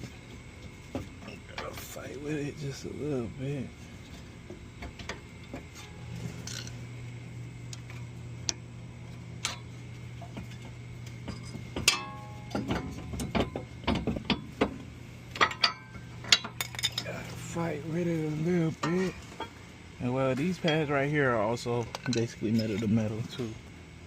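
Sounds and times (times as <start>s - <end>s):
steady low hum: 0.0s - 24.0s
ringing metal clink: 11.3s - 12.6s.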